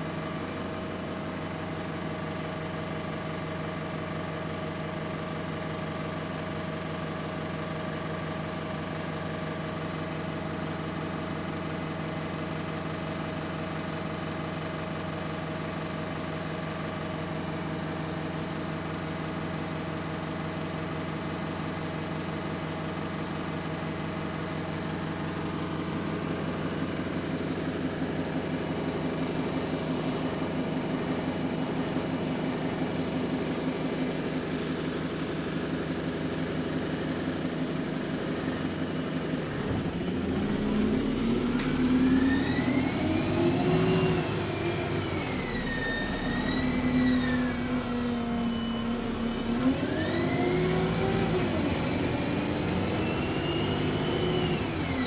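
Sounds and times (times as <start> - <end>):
turbo whine: 21.0 - 55.0
bus diesel engine running: 22.8 - 54.7.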